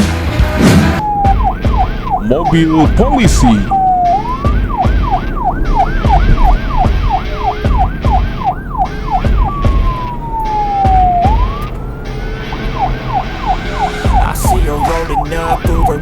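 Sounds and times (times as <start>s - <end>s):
police siren: 0.4s - 16.0s.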